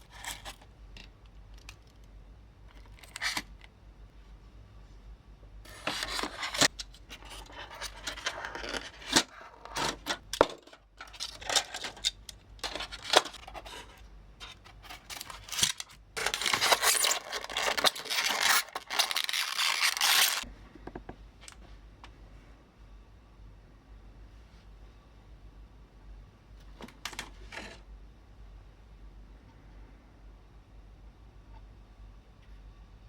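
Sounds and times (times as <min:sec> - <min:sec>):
continuous scraping: 0:00.0 - 0:00.8, 0:05.7 - 0:20.5.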